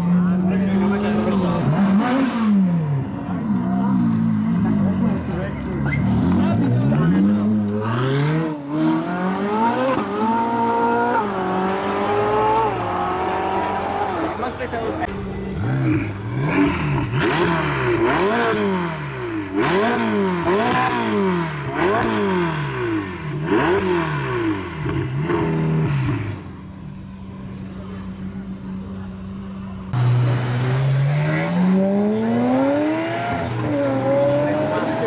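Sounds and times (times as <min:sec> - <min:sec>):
car engine revving: 0:00.0 - 0:35.0.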